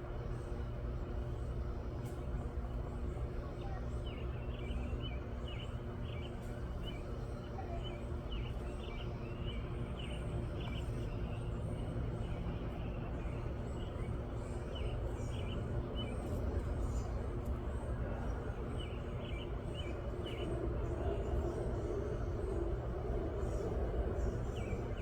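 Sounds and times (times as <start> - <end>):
small birds chirping: 3.7 - 21.7.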